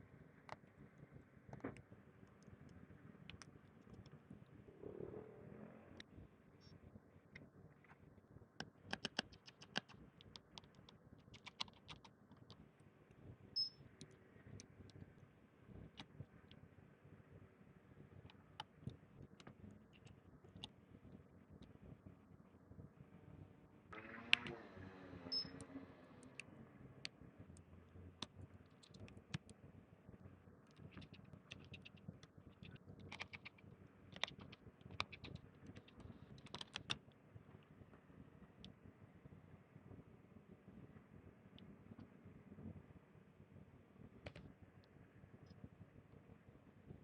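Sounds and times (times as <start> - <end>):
low hum: 4.4 - 6.7.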